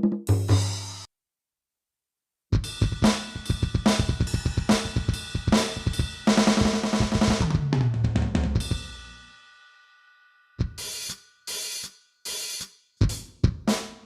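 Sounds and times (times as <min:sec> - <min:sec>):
electronic drum groove: 0:00.0 - 0:01.1, 0:02.6 - 0:09.2, 0:10.6 - 0:14.0
tom fill: 0:00.0 - 0:01.1.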